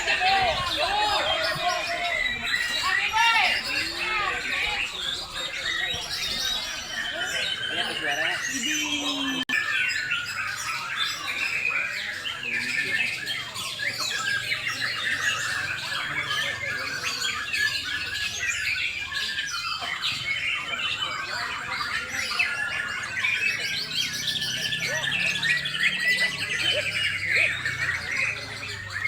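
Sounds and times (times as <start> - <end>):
birds singing trills and whistles: 0.0 - 29.0.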